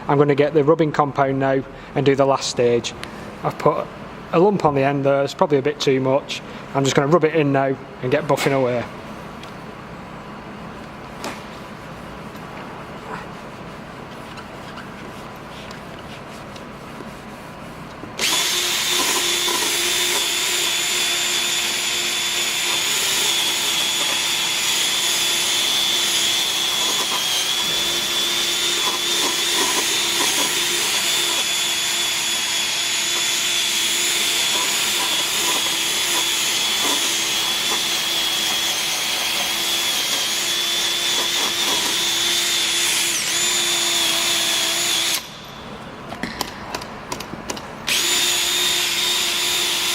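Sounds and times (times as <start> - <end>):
electric drill whining: 18.2 - 45.6, 47.9 - 49.9.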